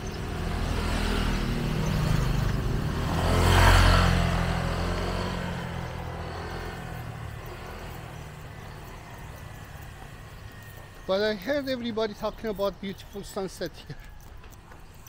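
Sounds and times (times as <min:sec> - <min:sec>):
vehicle engine passing by: 0:00.0 - 0:12.0.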